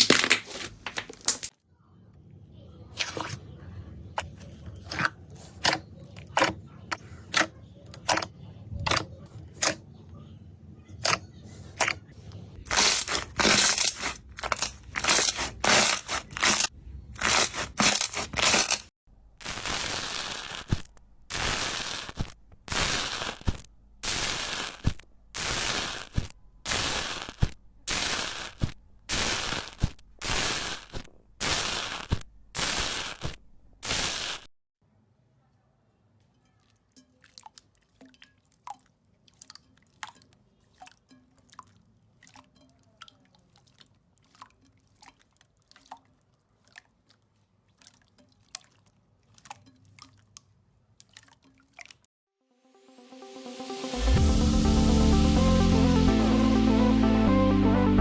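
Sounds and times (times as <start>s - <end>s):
slime squishing: 0.0s - 1.5s, 4.2s - 9.8s, 11.0s - 18.9s, 37.2s - 52.0s
slime popping: 12.7s - 18.8s.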